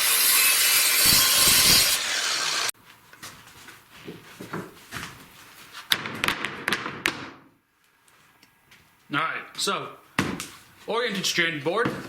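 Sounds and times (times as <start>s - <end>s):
saw cutting through board: 0.0s - 2.8s.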